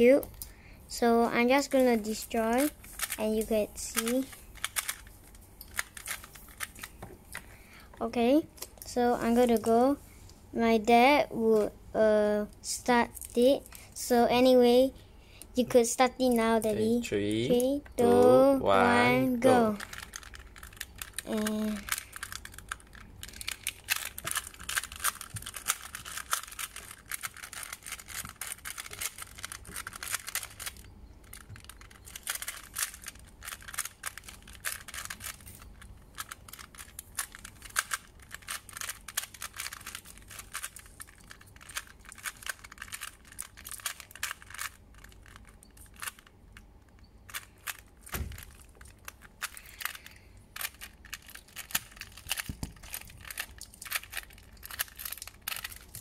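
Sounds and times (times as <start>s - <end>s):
puzzle cube clicking: 2.1s - 7.5s, 19.3s - 46.7s, 47.3s - 56.0s.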